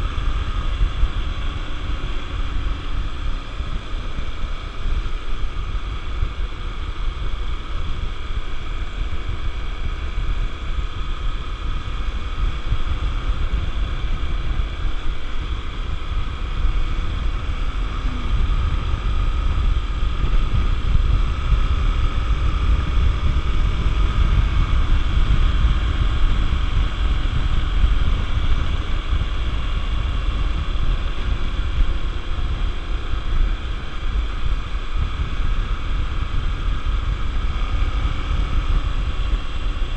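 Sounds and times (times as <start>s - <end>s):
motorcycle engine running: 0.0s - 39.9s
wind rumbling on microphone: 0.0s - 39.9s.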